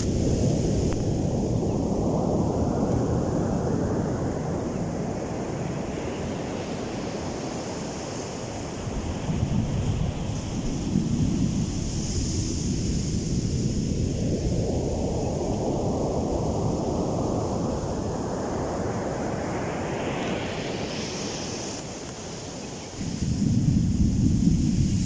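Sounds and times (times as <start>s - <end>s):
wind buffeting microphone: 0.0s - 25.0s
ocean waves breaking: 16.7s - 23.1s
rushing hiss rising in pitch: 18.0s - 25.0s.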